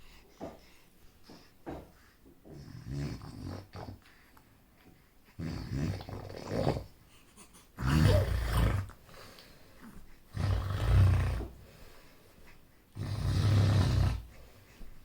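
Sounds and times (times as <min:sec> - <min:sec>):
loud low snores: 0:02.5 - 0:04.0, 0:05.4 - 0:06.9, 0:07.8 - 0:09.0, 0:10.3 - 0:11.6, 0:13.0 - 0:14.4.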